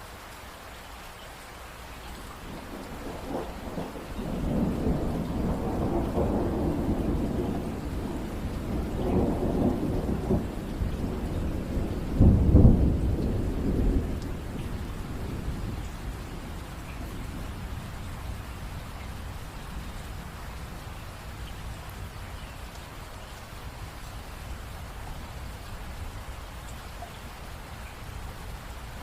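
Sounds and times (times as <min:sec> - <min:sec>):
steady rain: 0:00.0 - 0:29.0
thunder rolling: 0:02.5 - 0:19.9.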